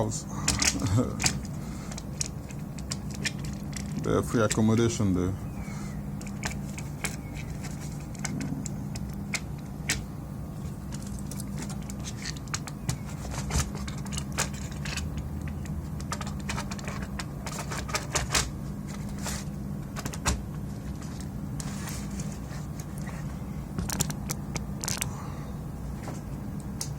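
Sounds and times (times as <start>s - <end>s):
steady low hum: 0.0s - 26.9s
plastic and metal parts clicking: 0.5s - 4.6s.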